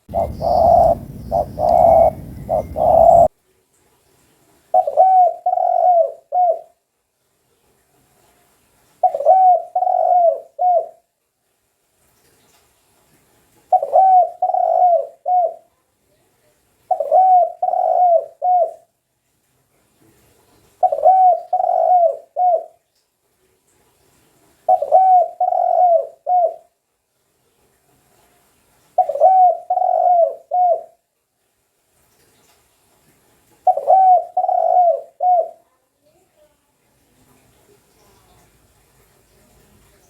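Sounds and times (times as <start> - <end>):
dove cooing: 0.0 - 3.3, 4.7 - 6.7, 9.0 - 11.0, 13.7 - 15.7, 16.9 - 18.8, 20.8 - 22.8, 24.7 - 26.7, 29.0 - 31.0, 33.6 - 35.6.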